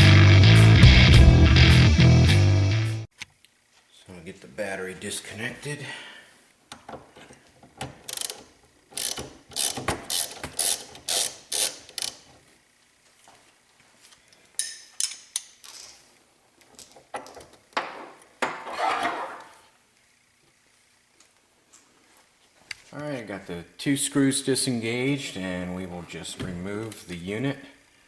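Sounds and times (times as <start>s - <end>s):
hand ratchet clicking: 8.0s - 12.3s.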